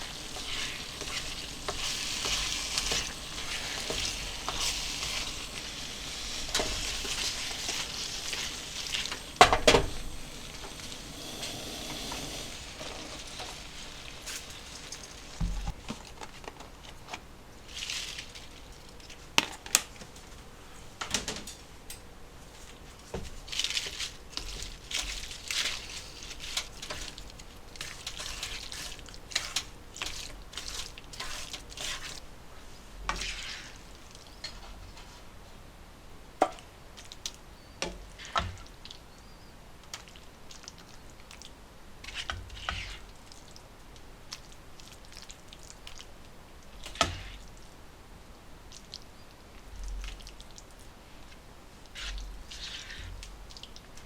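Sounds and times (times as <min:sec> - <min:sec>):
kitchen utensils and dishes clinking: 0:00.0 - 0:16.2.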